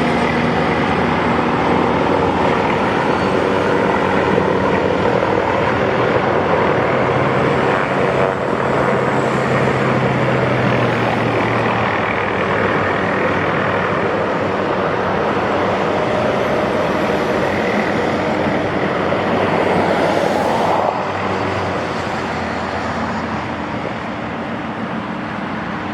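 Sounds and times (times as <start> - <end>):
helicopter engine and rotors: 0.0 - 25.9.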